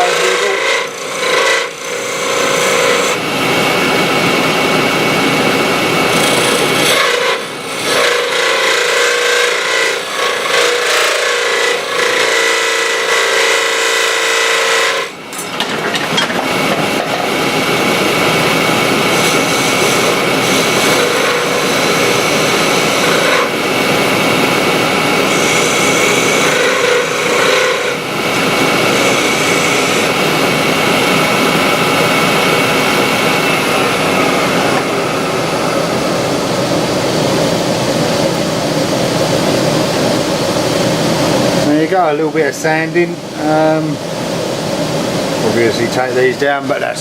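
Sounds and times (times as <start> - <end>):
turning tool scraping wood: 0.0 - 3.2, 6.1 - 17.4, 19.0 - 23.5, 25.2 - 30.1
wood lathe humming: 0.0 - 47.0.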